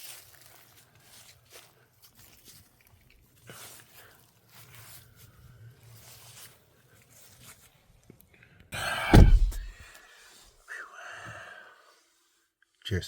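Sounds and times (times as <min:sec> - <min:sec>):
heavy thump: 0:09.1 - 0:09.8.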